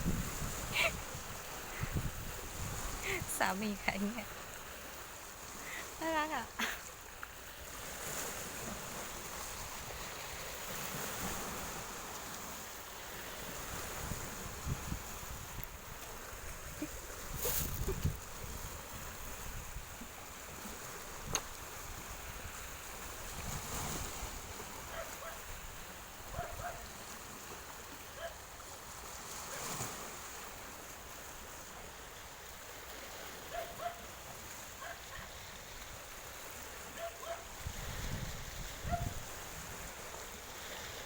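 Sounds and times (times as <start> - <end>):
wind on microphone: 0.0 - 4.2, 13.4 - 27.0, 37.2 - 40.2
sea water washing: 0.0 - 41.0.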